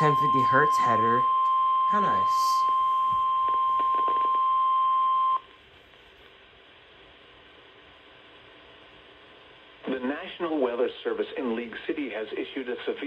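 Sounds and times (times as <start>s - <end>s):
steady high alarm beep: 0.0s - 5.4s
faint radio hiss: 5.4s - 13.0s.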